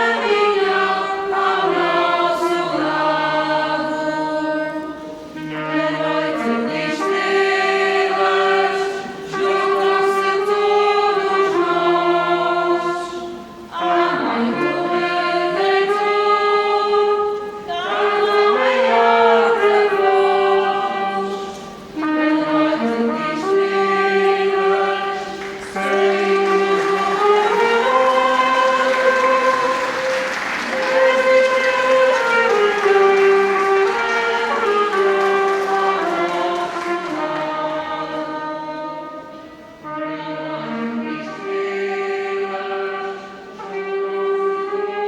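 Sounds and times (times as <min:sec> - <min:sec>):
choir singing folk song: 0:00.0 - 0:45.0.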